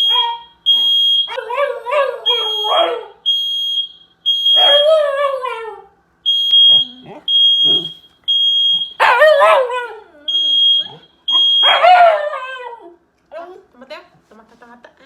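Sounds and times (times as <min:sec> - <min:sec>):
smoke alarm beeping: 0:00.0 - 0:01.4, 0:02.2 - 0:05.1, 0:06.2 - 0:09.6, 0:10.3 - 0:12.2
dog howling: 0:01.3 - 0:03.2, 0:04.6 - 0:06.0, 0:09.0 - 0:10.3, 0:11.6 - 0:13.0.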